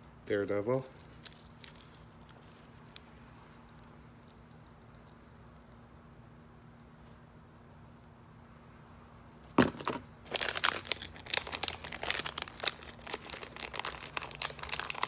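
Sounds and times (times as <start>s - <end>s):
packaging crinkling: 9.6s - 15.0s
packaging ripping: 9.6s - 15.0s.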